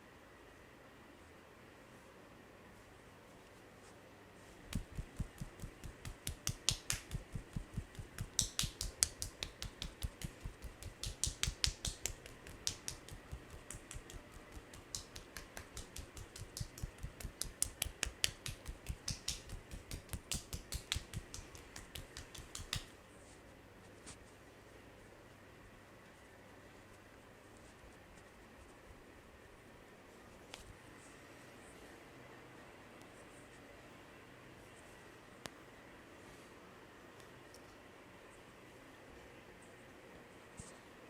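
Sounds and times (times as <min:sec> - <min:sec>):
hands striking head: 0:04.7 - 0:22.9.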